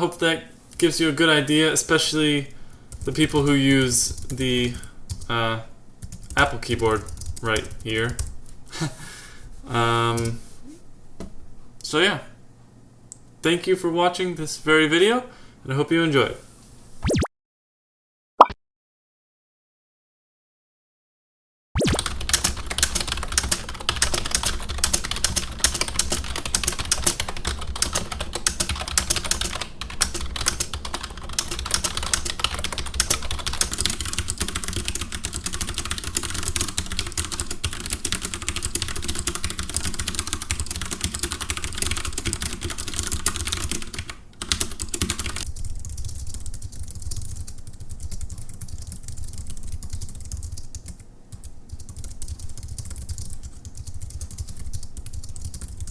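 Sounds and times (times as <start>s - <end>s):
fast keyboard typing: 2.7s - 5.4s, 6.0s - 8.4s, 21.8s - 55.9s.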